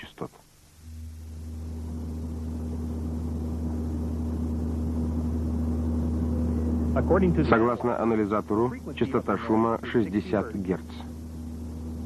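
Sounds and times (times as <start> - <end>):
higher steady hum: 0.0 - 12.0
low booming car drone: 0.8 - 9.3.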